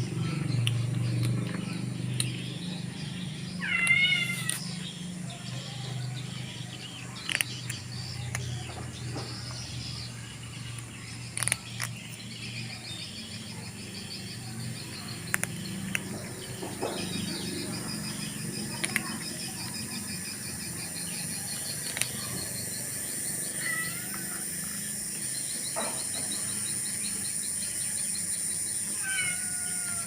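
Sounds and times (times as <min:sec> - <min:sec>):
cat meowing: 0:03.6 - 0:04.6, 0:23.6 - 0:24.4, 0:29.0 - 0:30.0
sharp clicks: 0:03.8 - 0:04.9, 0:07.2 - 0:09.6, 0:10.6 - 0:12.4, 0:15.1 - 0:20.4, 0:21.1 - 0:22.6.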